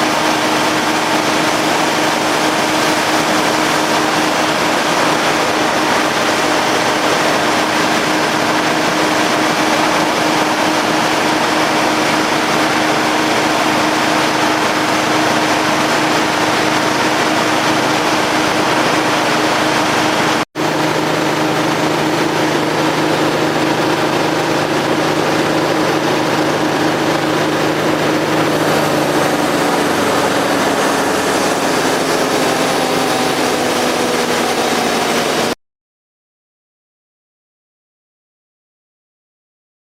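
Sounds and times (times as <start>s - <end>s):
drum chipper machine drone: 0.0s - 35.6s.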